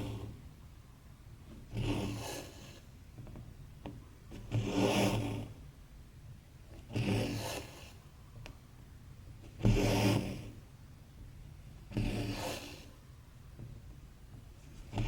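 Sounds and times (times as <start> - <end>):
thread rasping through fabric: 4.3 - 5.5.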